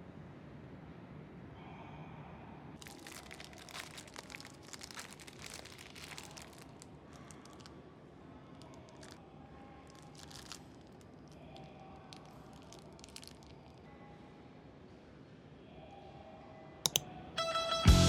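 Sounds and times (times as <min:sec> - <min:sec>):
crinkling and crackling: 0:02.8 - 0:07.9, 0:08.5 - 0:09.2, 0:09.8 - 0:13.9.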